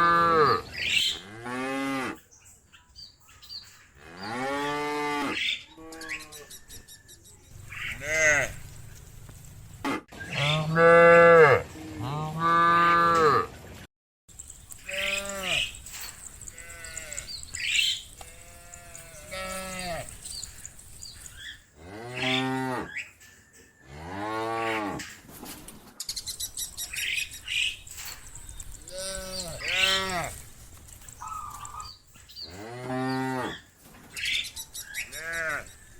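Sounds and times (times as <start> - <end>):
cows mooing: 0.0 - 0.6, 4.0 - 6.5, 7.7 - 8.7, 10.3 - 13.5, 14.9 - 20.6, 21.8 - 23.0, 28.8 - 30.4, 32.5 - 33.6, 35.1 - 35.8.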